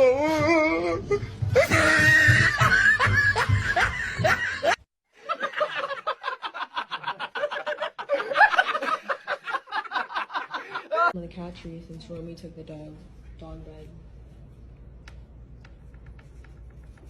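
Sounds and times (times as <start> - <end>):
person laughing: 1.6 - 4.8.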